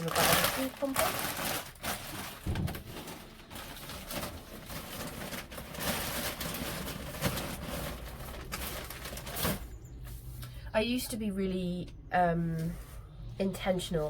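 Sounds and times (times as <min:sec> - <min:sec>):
close rustling and scraping: 0:00.0 - 0:10.6.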